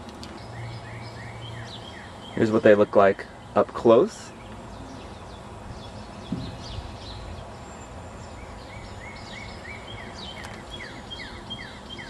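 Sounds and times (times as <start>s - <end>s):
songbirds chirping: 0.0s - 12.0s.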